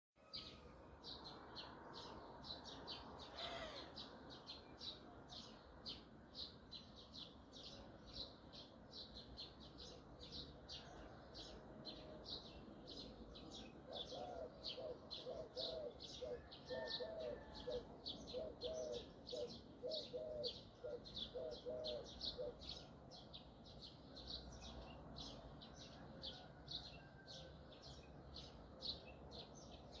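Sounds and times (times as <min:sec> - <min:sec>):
bird chirping: 0:00.2 - 0:30.0
lower bird call: 0:03.2 - 0:04.0.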